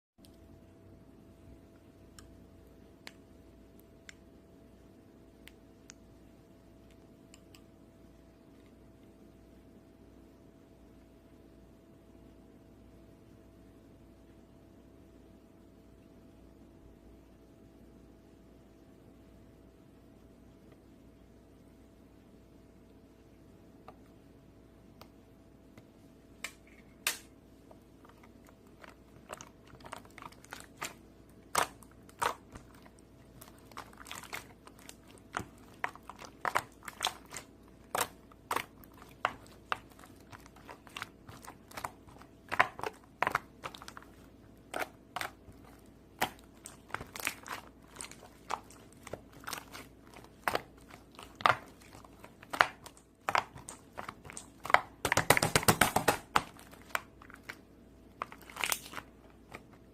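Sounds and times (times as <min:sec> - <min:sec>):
crunchy slime crackling pops: 0:28.0 - 0:57.6, 0:58.2 - 0:59.8.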